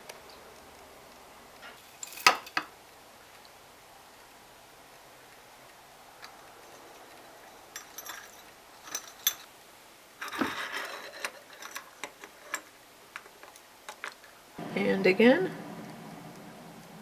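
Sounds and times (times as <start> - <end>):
cups and kitchenware clinking: 6.6 - 9.5.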